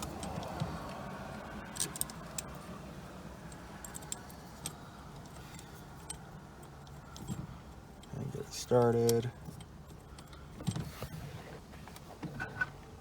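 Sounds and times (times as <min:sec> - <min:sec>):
small screws clinking: 0:01.6 - 0:02.6, 0:03.5 - 0:10.8.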